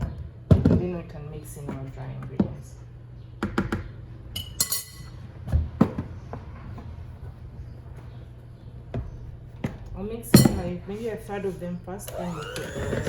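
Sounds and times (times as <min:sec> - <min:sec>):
bowls and utensils clinking: 0:04.4 - 0:05.2.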